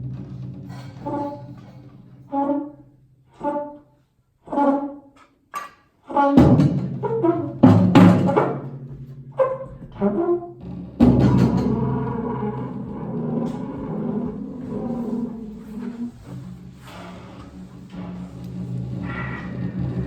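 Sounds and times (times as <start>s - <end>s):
trombone notes: 0.7s - 5.3s, 6.1s - 20.0s
percussion hits: 6.4s - 20.0s.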